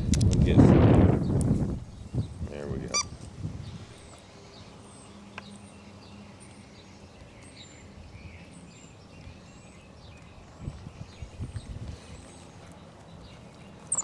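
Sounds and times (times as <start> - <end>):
sharp click: 0.1 - 0.4.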